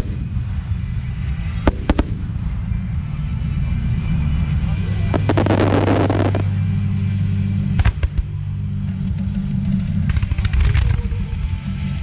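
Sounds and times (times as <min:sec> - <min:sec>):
fireworks crackling and banging: 0:00.0 - 0:02.8, 0:05.1 - 0:06.6, 0:07.7 - 0:08.3, 0:09.9 - 0:11.0
low rumble: 0:00.0 - 0:12.0.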